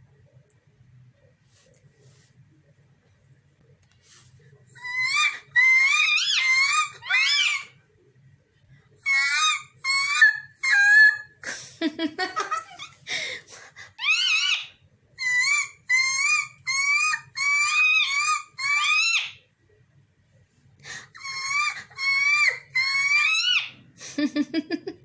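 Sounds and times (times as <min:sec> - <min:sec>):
parrot chattering: 0:04.8 - 0:07.7, 0:09.1 - 0:11.4, 0:14.0 - 0:19.4
parrot squawking: 0:04.8 - 0:07.8, 0:09.0 - 0:11.4, 0:14.0 - 0:19.4, 0:21.2 - 0:23.8.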